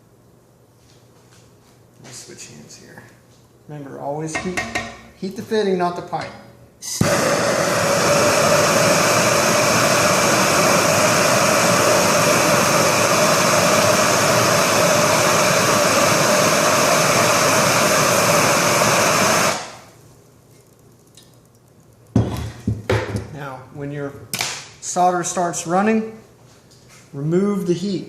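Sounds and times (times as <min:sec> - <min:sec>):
gas torch flame roaring: 0:06.8 - 0:20.1.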